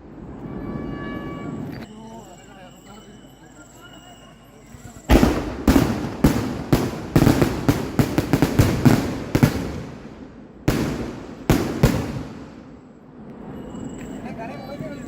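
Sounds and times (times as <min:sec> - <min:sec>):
fireworks bangs: 0:04.8 - 0:13.5.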